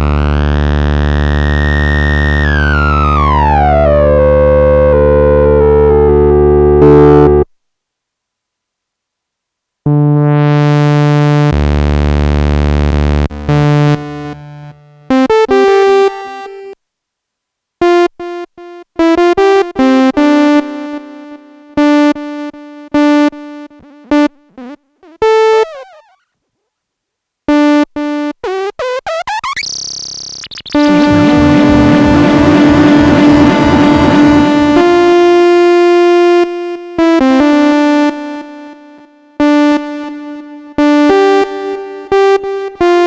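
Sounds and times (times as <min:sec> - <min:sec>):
plucky sequenced synth notes: 0:28.8 - 0:35.7
noisy rising synth sweep: 0:29.5 - 0:35.9
synthesizer held note: 0:29.6 - 0:35.8
dense sustained synth tone: 0:30.4 - 0:35.8.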